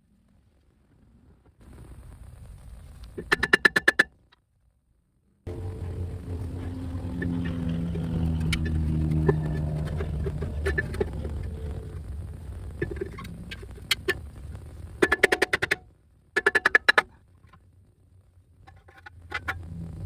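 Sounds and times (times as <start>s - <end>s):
low steady hum: 5.5s - 16.4s, 17.1s - 20.0s.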